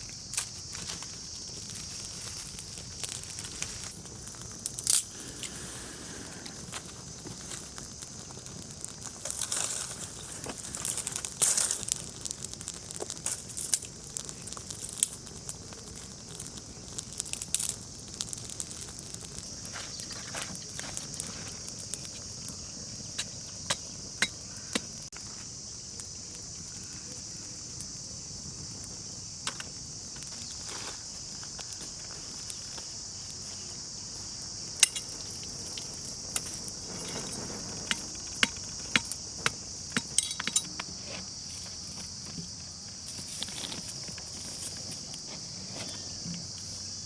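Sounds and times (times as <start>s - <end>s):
insects trilling: 0.0s - 47.0s.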